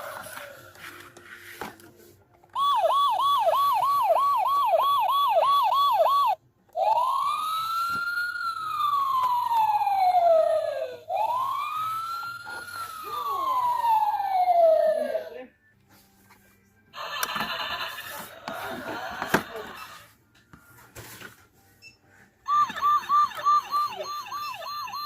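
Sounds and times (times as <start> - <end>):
toy electronic siren: 2.5 - 15.5, 17.0 - 20.0, 22.4 - 25.0.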